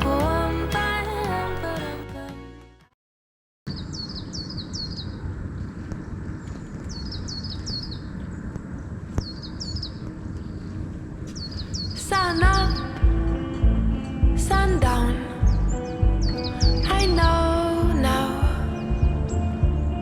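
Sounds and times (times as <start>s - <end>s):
music: 0.0s - 3.0s, 12.3s - 20.0s
small bird chirping: 3.7s - 5.2s
outdoor background noise: 3.7s - 20.0s.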